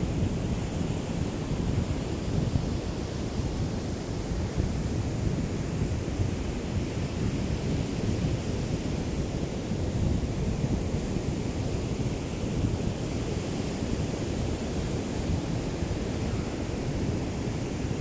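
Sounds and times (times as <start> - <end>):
wind rumble on microphone: 0.0 - 18.0.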